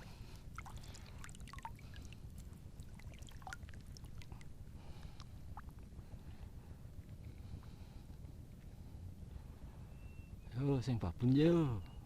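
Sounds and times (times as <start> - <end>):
small water splashes and trickles: 0.0 - 5.6.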